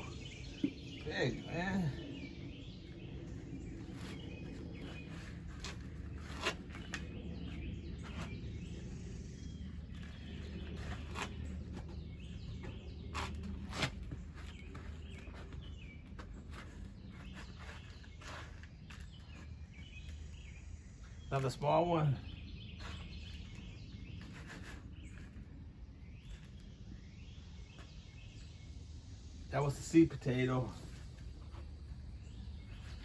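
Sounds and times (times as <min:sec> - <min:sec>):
low background hum: 0:00.0 - 0:33.0.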